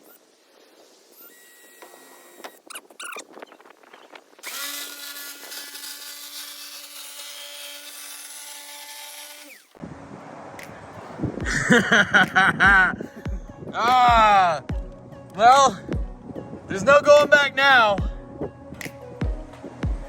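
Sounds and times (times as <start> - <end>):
power drill boring: 4.4 - 9.8.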